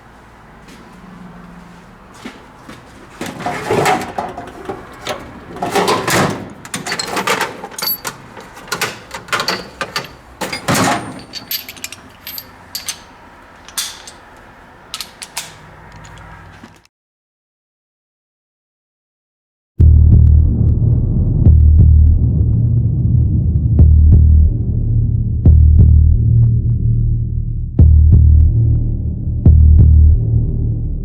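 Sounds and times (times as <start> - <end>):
knocks and clicks: 3.2 - 16.9.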